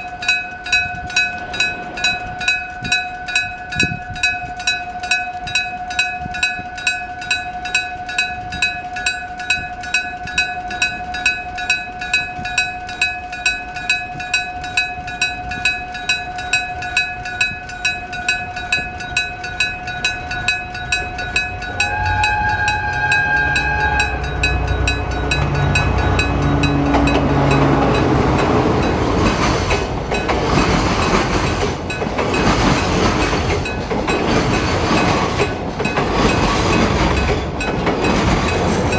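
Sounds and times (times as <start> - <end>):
diesel locomotive engine rumble: 0.0 - 4.8, 19.2 - 38.9
train wheel noise: 0.0 - 38.9
level crossing bell striking: 17.3 - 30.4
railway horn: 21.4 - 30.8.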